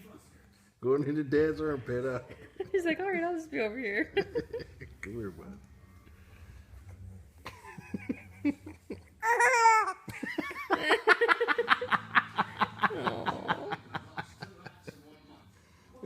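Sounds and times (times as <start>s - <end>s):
person laughing: 10.1s - 14.6s.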